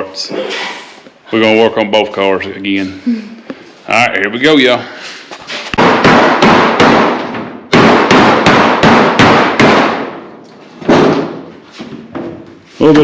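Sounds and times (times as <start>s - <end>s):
hammer striking sheet metal: 5.7s - 10.3s.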